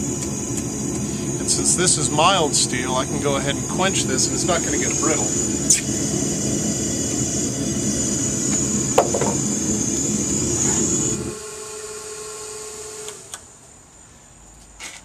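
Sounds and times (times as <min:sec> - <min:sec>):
high hiss of quenching steel: 0:00.9 - 0:11.2.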